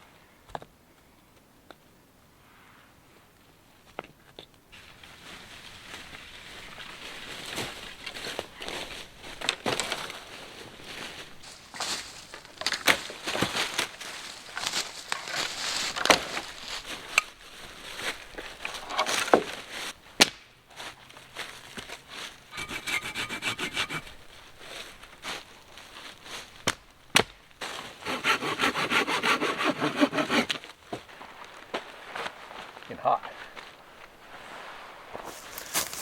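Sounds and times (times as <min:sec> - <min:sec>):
wood cracking: 0:12.3 - 0:17.3
hand saw cutting wood: 0:22.5 - 0:24.2, 0:28.0 - 0:30.6.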